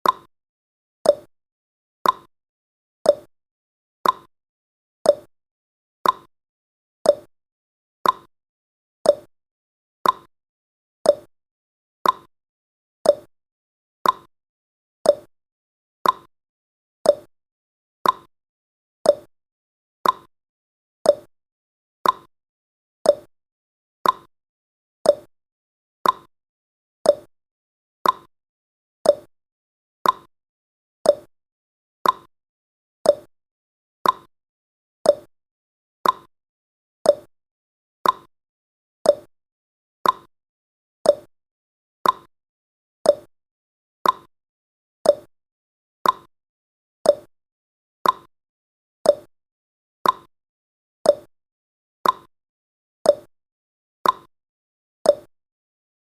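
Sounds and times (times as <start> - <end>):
sharp timer ticks: 2.0 - 2.3, 4.0 - 4.3, 6.0 - 6.3, 8.0 - 8.3, 10.0 - 10.3, 12.0 - 12.3, 14.0 - 14.3, 16.0 - 16.3, 18.0 - 18.3, 20.0 - 20.3, 22.0 - 22.3, 24.0 - 24.3, 26.0 - 26.3, 27.1 - 27.3, 28.0 - 28.3, 30.0 - 30.3, 31.1 - 31.3, 32.0 - 32.3, 33.1 - 33.3, 34.0 - 34.3, 35.1 - 35.3, 36.0 - 36.3, 37.1 - 37.3, 38.0 - 38.3, 39.1 - 39.3, 40.0 - 40.3, 41.1 - 41.3, 42.0 - 42.3, 43.1 - 43.3, 44.0 - 44.3, 45.1 - 45.3, 46.0 - 46.3, 47.1 - 47.3, 48.0 - 48.3, 49.1 - 49.3, 50.0 - 50.3, 51.1 - 51.3, 52.0 - 52.3, 54.0 - 54.3, 55.1 - 55.3.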